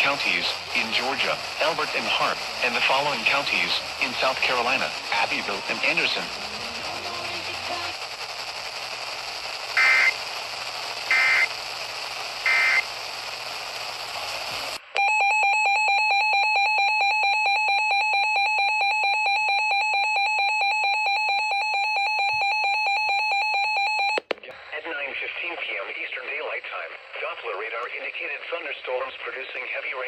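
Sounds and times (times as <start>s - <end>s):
radio hiss: 0.0s - 14.9s, 24.3s - 30.0s
shrill data-tone bursts: 9.8s - 10.2s, 11.1s - 11.5s, 12.5s - 12.8s.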